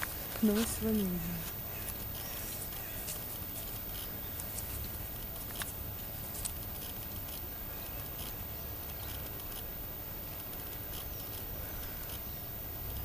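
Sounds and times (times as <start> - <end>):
footsteps on path: 0.0 - 8.4.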